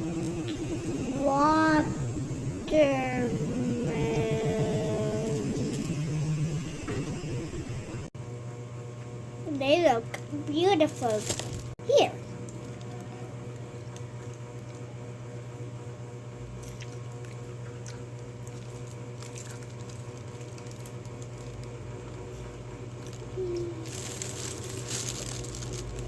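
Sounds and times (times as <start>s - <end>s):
steady low hum: 0.0s - 26.0s
handling and crinkling noises: 10.8s - 11.8s, 18.4s - 26.0s
rustling: 23.1s - 26.0s.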